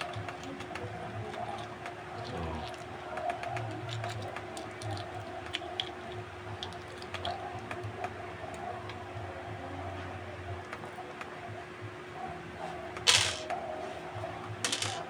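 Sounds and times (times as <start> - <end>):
steady background hum: 0.0 - 15.0
small metal parts clicking: 14.6 - 15.0.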